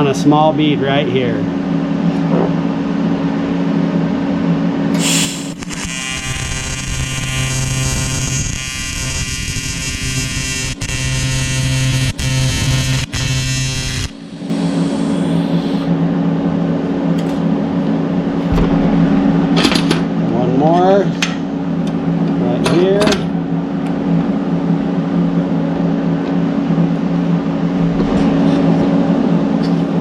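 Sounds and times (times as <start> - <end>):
welding arc buzzing: 4.9 - 16.2
welding machine hum: 4.9 - 20.7
short hiss: 5.0 - 5.6.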